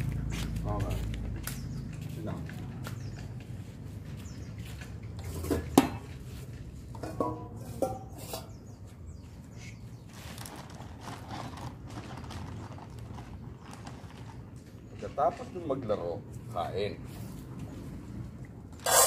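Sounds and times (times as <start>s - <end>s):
metal bowls clanking: 5.1s - 6.2s, 6.9s - 8.8s.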